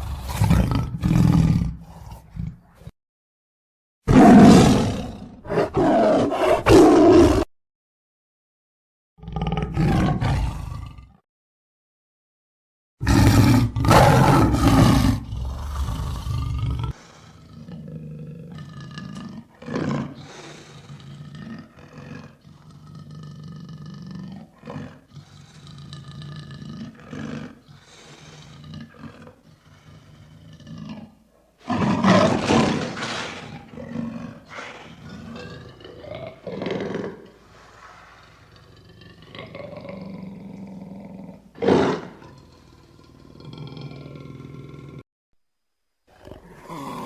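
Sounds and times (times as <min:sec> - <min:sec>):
lion roaring: 0:00.0 - 0:02.7, 0:04.1 - 0:07.5, 0:09.2 - 0:11.2, 0:13.0 - 0:45.0, 0:46.1 - 0:47.0
lion grunting calls: 0:23.8 - 0:45.0, 0:46.1 - 0:47.0.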